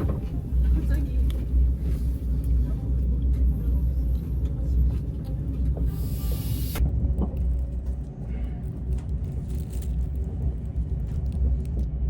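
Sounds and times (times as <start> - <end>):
train rumbling: 0.0 - 12.0
hiss: 5.9 - 6.8.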